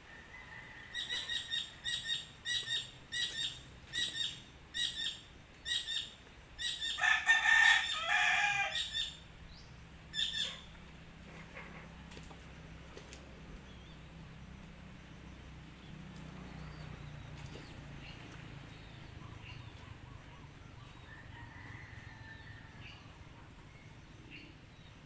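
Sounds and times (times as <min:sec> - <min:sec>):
chickens calling: 0:00.0 - 0:13.2
low steady hum: 0:00.0 - 0:25.0
small birds calling: 0:00.6 - 0:21.7.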